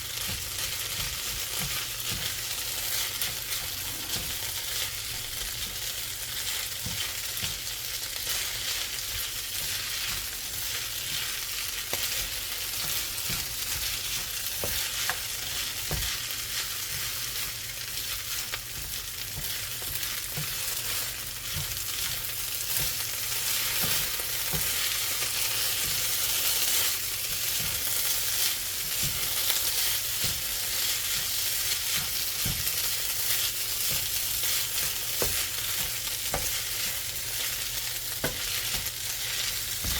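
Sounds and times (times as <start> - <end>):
rice sizzling in a pan: 0.0 - 39.9
utensil scraping the pan: 1.0 - 5.9.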